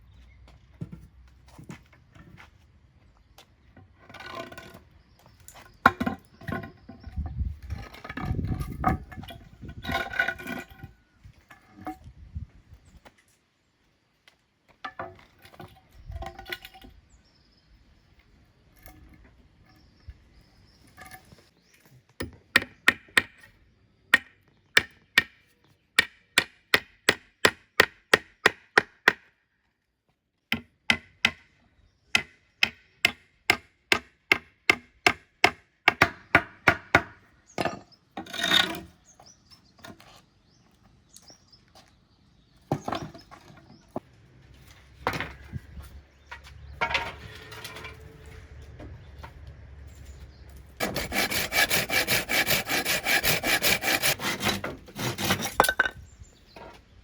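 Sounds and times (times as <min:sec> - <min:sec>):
hammer striking nails into wood: 0:26.0 - 0:29.3.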